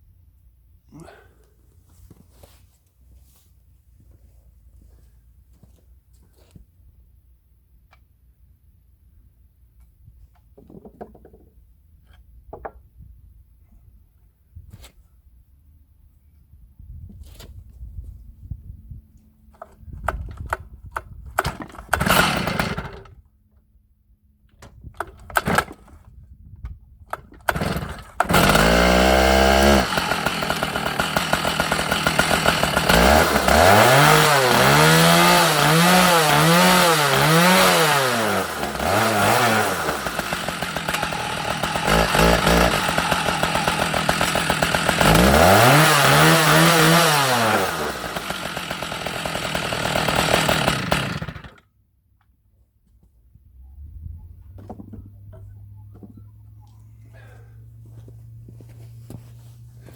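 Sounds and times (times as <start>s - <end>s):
chainsaw starter cord pulls: 19.5s - 23.2s, 24.6s - 26.2s, 27.1s - 51.7s
chainsaw engine revving: 21.4s - 23.2s, 25.0s - 25.9s, 27.1s - 51.6s.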